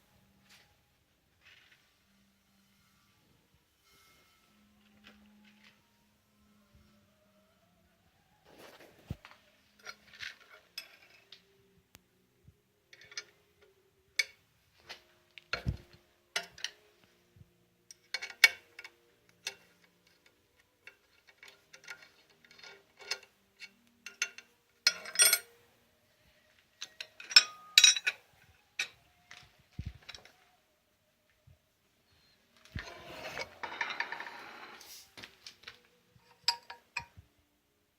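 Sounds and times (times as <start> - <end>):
metal tools clinking: 20.8 - 25.5, 26.8 - 28.2, 32.7 - 34.8.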